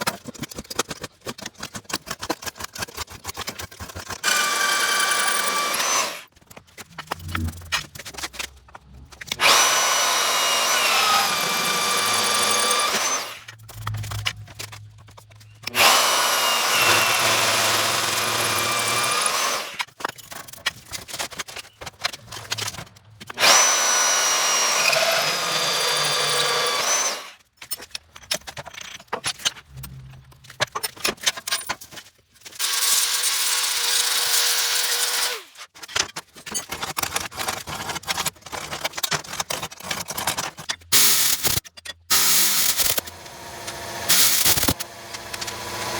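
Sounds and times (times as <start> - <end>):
electric drill boring steel: 4.2 - 6.3, 9.3 - 13.5, 15.6 - 19.9, 23.4 - 27.4, 32.6 - 35.6, 41.0 - 45.9.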